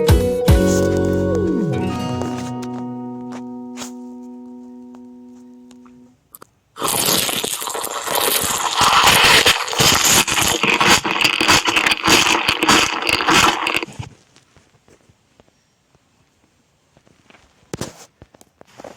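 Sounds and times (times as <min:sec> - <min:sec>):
dense crunching and crackling: 0:00.6 - 0:15.6.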